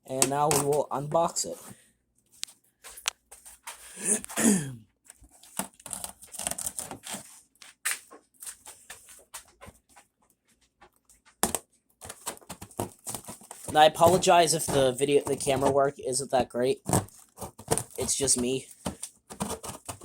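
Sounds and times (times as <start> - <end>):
scratching and picking at cardboard: 0.1 - 4.4, 5.0 - 16.0, 16.7 - 20.0
packing tape ripping: 5.5 - 7.2
cardboard scrape: 12.0 - 15.8, 16.8 - 20.0.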